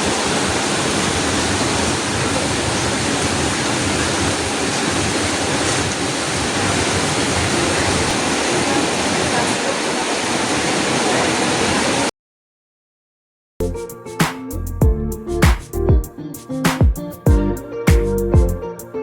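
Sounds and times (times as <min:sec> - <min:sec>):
heavy rain falling: 0:00.0 - 0:12.1.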